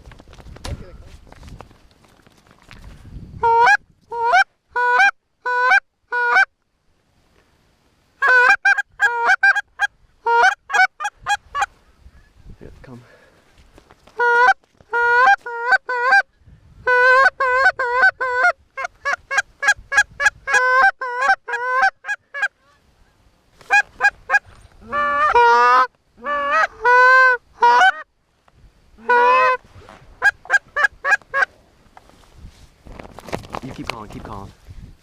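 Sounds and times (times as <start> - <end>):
goose call clucks and honks: 3.4 - 6.5, 8.2 - 11.7, 14.2 - 22.8, 23.6 - 28.1, 29.0 - 29.6, 30.2 - 31.5.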